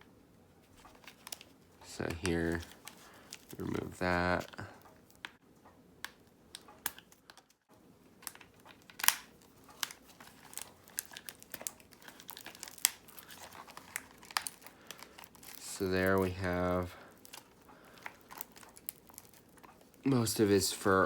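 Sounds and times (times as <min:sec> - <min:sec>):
plastic clips clicking: 0:06.0 - 0:07.6, 0:08.2 - 0:20.1
fabric rustling and tearing: 0:08.8 - 0:20.1.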